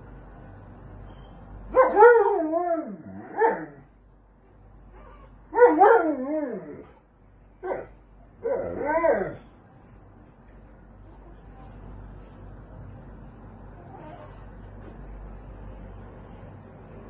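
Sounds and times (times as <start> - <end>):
dog whining: 4.9 - 7.0, 7.6 - 9.5, 13.8 - 14.5.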